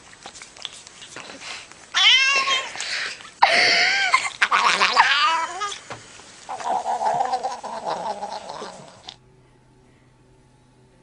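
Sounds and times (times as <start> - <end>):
cat yowling: 1.9 - 2.8, 4.4 - 5.8, 6.5 - 9.2.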